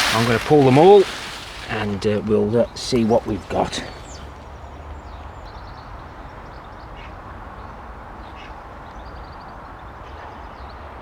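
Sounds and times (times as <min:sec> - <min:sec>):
small birds chirping: 0:00.0 - 0:07.7.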